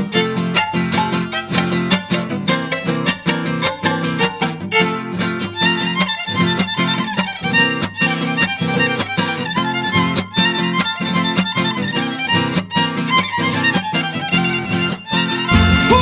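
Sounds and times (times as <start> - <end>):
strummed guitars: 0.0 - 16.0
violins playing: 13.6 - 16.0.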